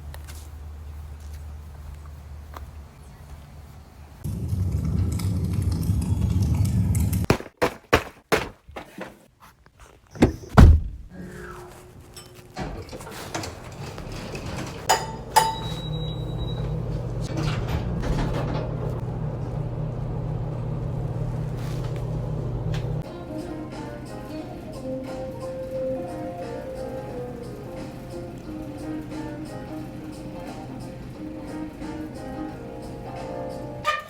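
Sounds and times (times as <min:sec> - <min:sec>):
steady low hum: 0:00.0 - 0:07.3, 0:14.9 - 0:33.8
heavy thunk: 0:10.2 - 0:11.1.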